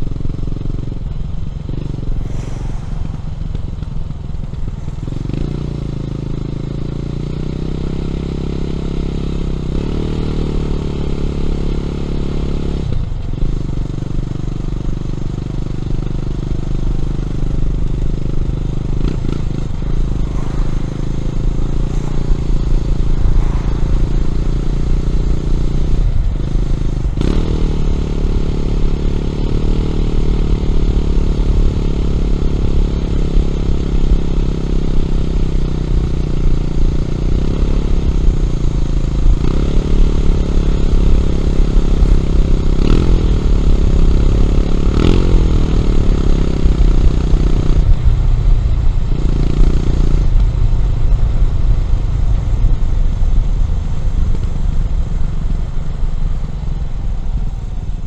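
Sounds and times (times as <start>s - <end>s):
low rumble: 0.0s - 7.2s, 16.8s - 29.3s, 46.8s - 58.0s
motorcycle engine running: 0.0s - 58.0s.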